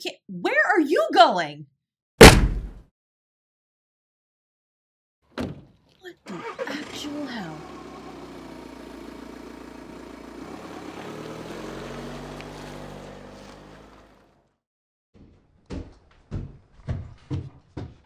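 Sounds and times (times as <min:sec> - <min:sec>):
car engine accelerating away: 0:06.4 - 0:14.6.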